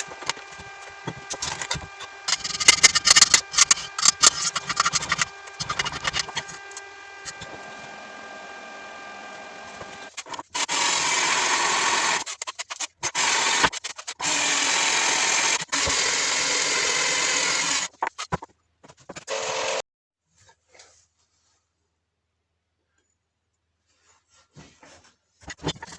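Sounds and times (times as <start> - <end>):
steady motor hum: 0.0 - 12.2
power tool running: 0.0 - 12.3, 13.1 - 17.9.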